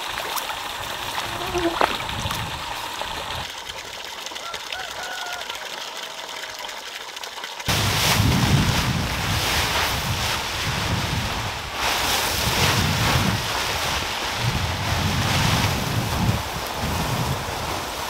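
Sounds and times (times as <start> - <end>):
wind buffeting microphone: 1.2 - 3.4, 7.7 - 17.9.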